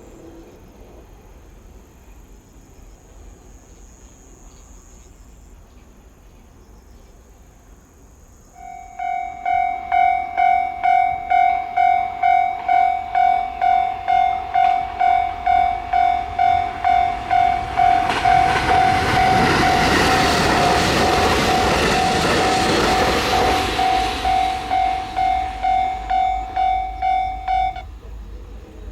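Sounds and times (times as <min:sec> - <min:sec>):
train rumbling on rails: 0:00.0 - 0:28.9
level crossing warning bell: 0:08.6 - 0:28.0.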